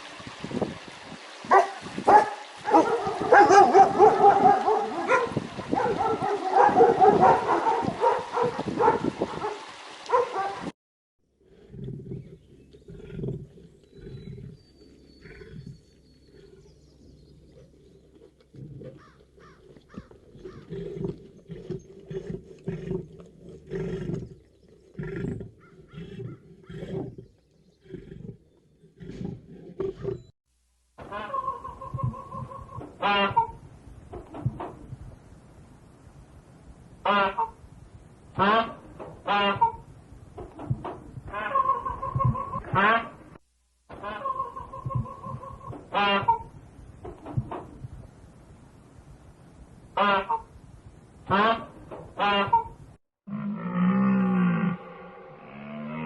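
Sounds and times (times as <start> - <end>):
young animals calling: 41.3 - 43.2.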